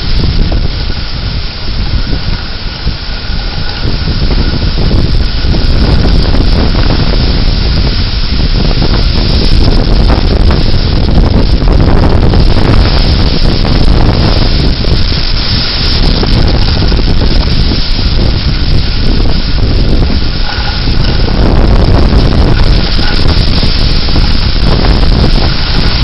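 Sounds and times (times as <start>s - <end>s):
strong wind buffeting microphone: 0.0s - 26.0s.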